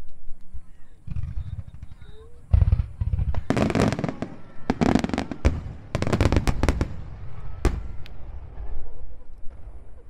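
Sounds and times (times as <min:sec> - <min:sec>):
fireworks crackling bursts: 0:01.0 - 0:08.7
rumble of fireworks booms: 0:01.0 - 0:10.0.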